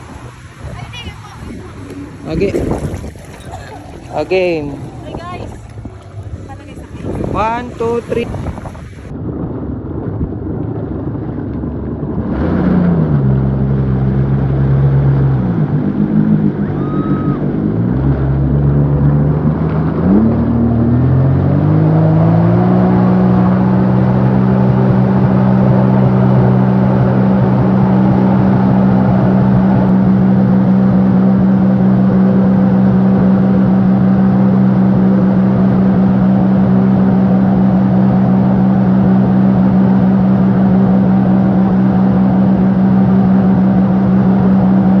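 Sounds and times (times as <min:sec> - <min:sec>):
motorboat engine revving: 0:00.0 - 0:45.0.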